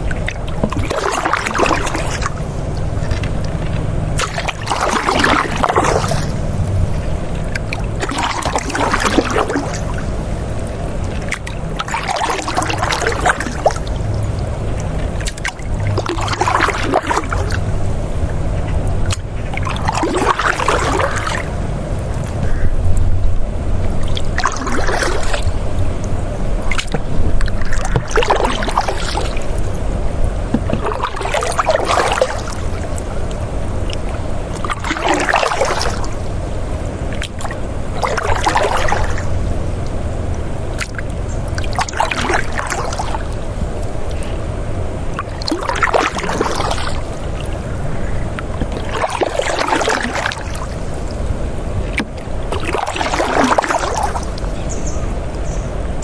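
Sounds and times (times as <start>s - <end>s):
low steady rumble: 0.0s - 56.0s
river water flowing: 0.0s - 56.0s
rush of splashing water: 0.0s - 56.0s.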